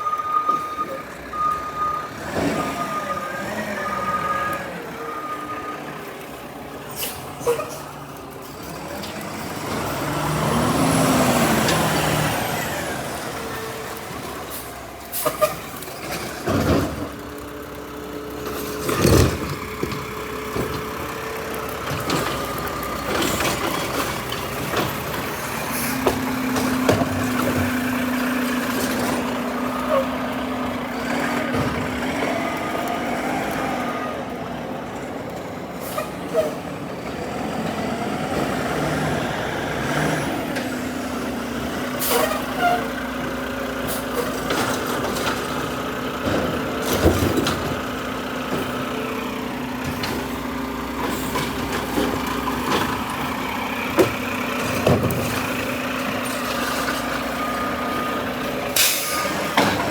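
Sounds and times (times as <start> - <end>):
garbage truck engine running: 0.0 - 59.9
air brake hiss: 58.8 - 59.4.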